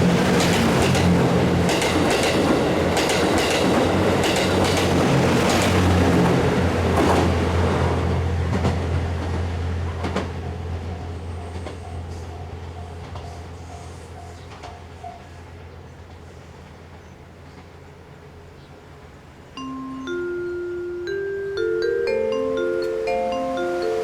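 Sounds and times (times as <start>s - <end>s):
train wheels clacking over rail joints: 0.0s - 15.4s
low train engine hum: 0.0s - 24.0s
level-crossing warning bell ringing: 9.8s - 15.3s, 19.6s - 24.0s.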